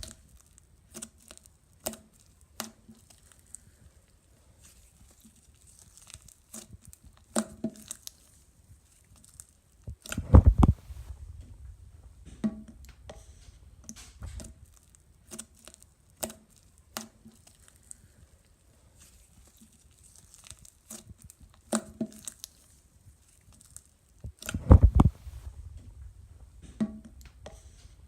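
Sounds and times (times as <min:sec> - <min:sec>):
slime sticky clicks and crackles: 0:00.0 - 0:03.6, 0:04.6 - 0:10.8, 0:13.9 - 0:25.4
louder knocks: 0:10.2 - 0:12.7, 0:24.5 - 0:26.0.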